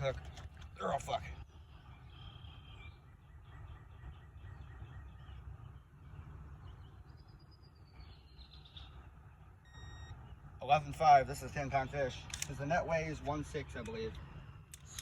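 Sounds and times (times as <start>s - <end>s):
birds calling: 0.0s - 15.0s
low wind rumble: 0.0s - 15.0s.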